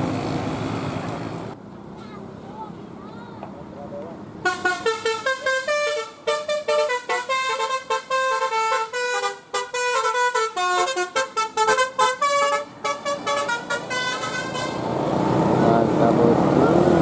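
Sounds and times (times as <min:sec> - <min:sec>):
musical bus horn tune: 0:04.4 - 0:14.9.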